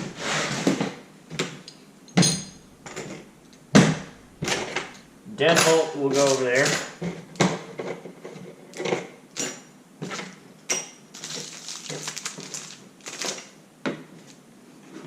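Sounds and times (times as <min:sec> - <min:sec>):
metal lock parts clinking: 0:01.6 - 0:03.6.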